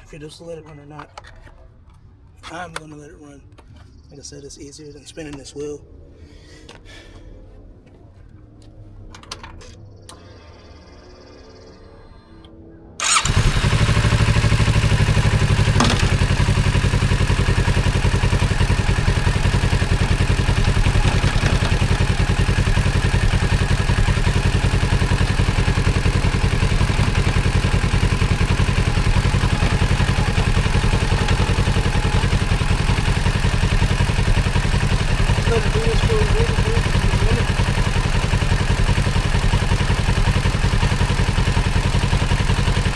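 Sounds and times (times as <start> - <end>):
motorcycle engine starting and idling: 9.0 - 42.9.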